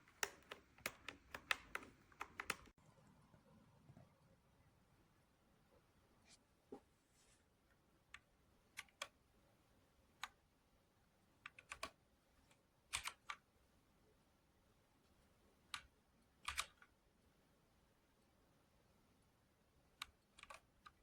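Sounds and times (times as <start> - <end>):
mechanical keyboard keystrokes: 0.0 - 2.7, 11.5 - 12.0, 12.9 - 13.4, 15.7 - 16.9, 20.3 - 21.0.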